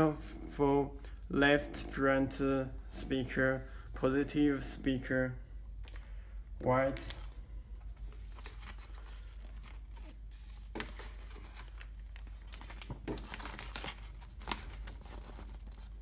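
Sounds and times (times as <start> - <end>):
wires rustling and crinkling: 6.8 - 16.0.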